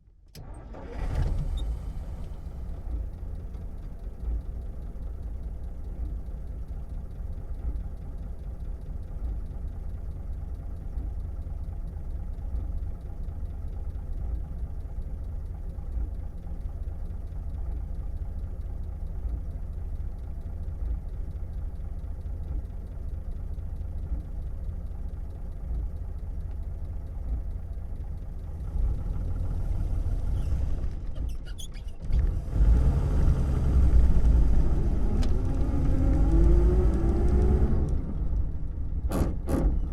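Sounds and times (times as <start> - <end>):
car engine idling and revving: 0.0 - 39.9.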